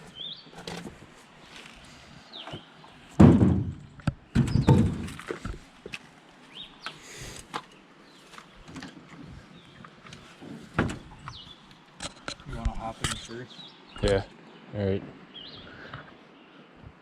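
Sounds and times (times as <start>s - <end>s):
heavy thuds: 3.2s - 5.6s.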